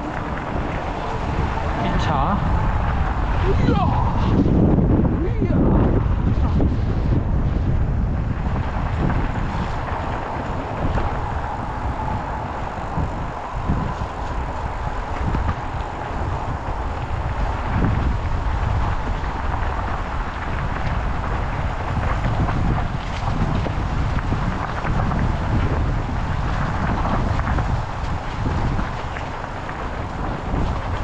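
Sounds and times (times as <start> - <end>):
wind buffeting microphone: 0.0 - 31.0.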